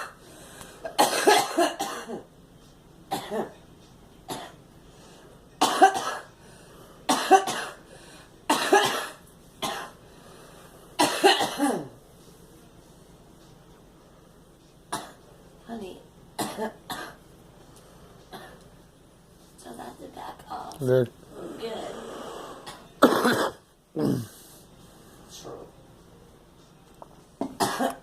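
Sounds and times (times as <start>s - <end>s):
girl coughing: 0.8s - 2.3s, 3.1s - 3.6s, 5.6s - 6.3s, 7.1s - 7.8s, 8.5s - 10.0s, 11.0s - 12.0s, 16.4s - 17.2s, 22.7s - 24.3s, 27.4s - 28.0s.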